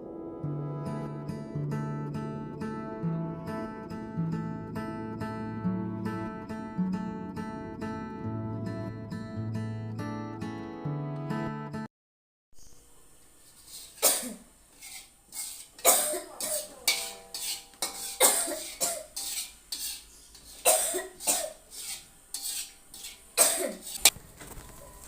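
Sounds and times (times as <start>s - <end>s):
person coughing harshly: 14.0s - 14.4s, 15.8s - 16.8s, 18.0s - 19.2s, 20.6s - 21.6s, 23.4s - 23.9s.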